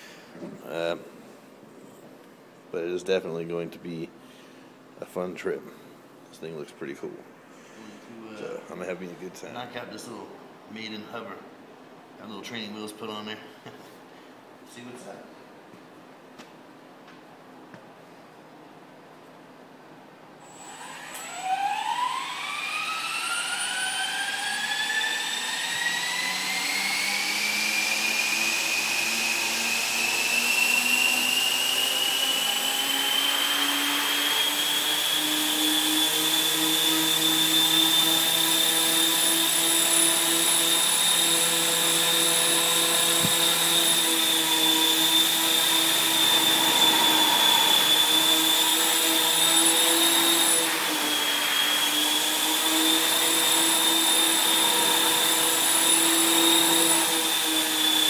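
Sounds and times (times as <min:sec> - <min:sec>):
helicopter motor and rotor whine: 0:20.6 - 0:58.0.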